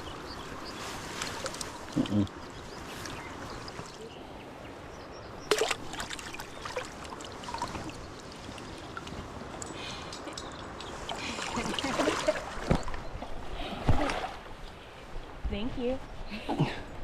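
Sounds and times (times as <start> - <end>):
river water running: 0.0 - 15.1.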